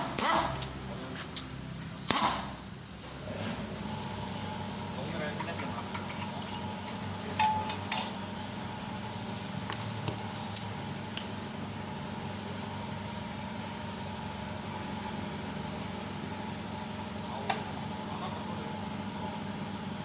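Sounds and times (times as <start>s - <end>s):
metallic clinks of tools: 5.3s - 8.2s.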